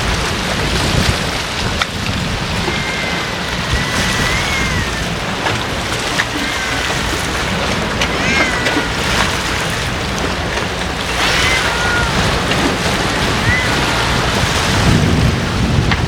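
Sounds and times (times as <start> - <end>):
wind buffeting microphone: 0.0 - 16.0
short high calls: 11.2 - 12.4.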